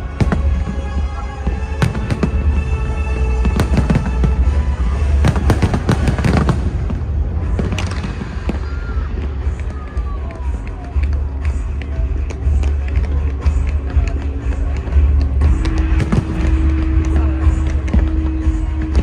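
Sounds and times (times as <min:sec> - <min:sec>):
fireworks cracks and bangs: 0:00.0 - 0:09.7, 0:15.3 - 0:18.8
deep rumble: 0:00.0 - 0:09.8, 0:15.1 - 0:19.0
music playing: 0:00.0 - 0:19.0.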